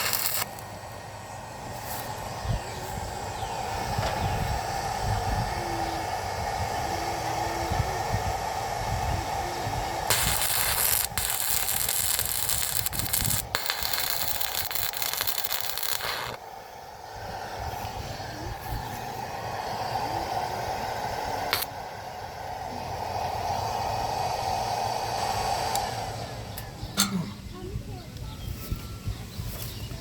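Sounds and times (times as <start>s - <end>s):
welding arc crackling: 0.0s - 3.0s, 9.8s - 16.4s, 21.5s - 21.8s
steady background hum: 0.0s - 28.4s.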